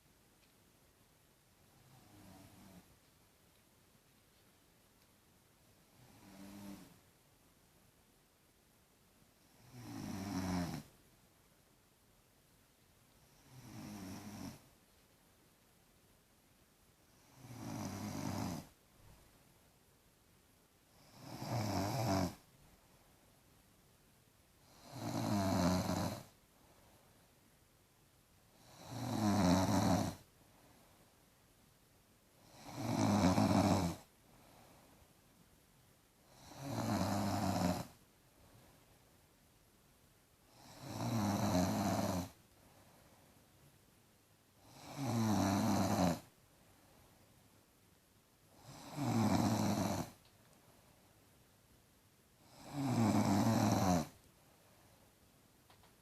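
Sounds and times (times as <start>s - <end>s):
girl snoring: 1.8s - 2.9s, 5.9s - 7.0s, 9.5s - 10.9s, 13.2s - 14.7s, 17.1s - 18.8s, 21.0s - 22.4s, 24.6s - 26.4s, 28.6s - 30.3s, 32.4s - 34.1s, 36.2s - 38.0s, 40.5s - 42.4s, 44.6s - 46.3s, 48.5s - 50.2s, 52.4s - 54.2s.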